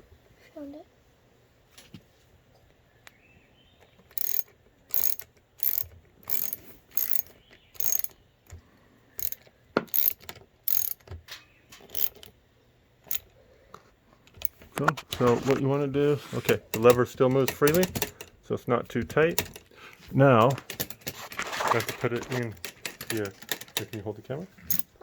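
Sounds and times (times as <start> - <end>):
ratchet wrench clicking: 4.1 - 8.2, 9.2 - 11.2, 11.8 - 12.3, 13.1 - 13.3, 14.4 - 14.6, 16.6 - 18.4, 22.6 - 24.0, 24.7 - 25.0.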